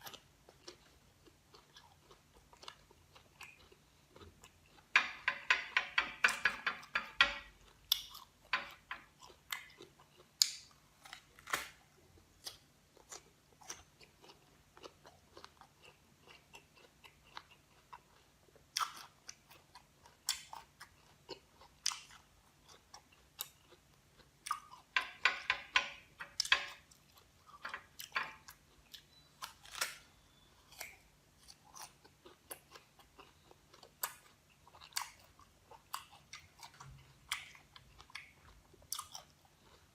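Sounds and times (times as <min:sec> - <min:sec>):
crunchy fruit being chewed: 0:00.0 - 0:05.0, 0:07.5 - 0:25.0, 0:26.7 - 0:39.9.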